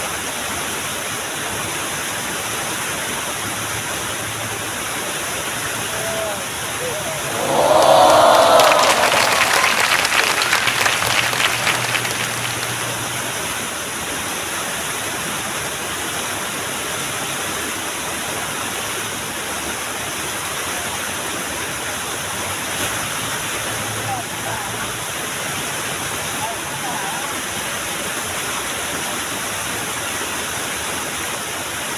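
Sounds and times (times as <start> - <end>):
waterfall rushing: 3.2 - 16.6.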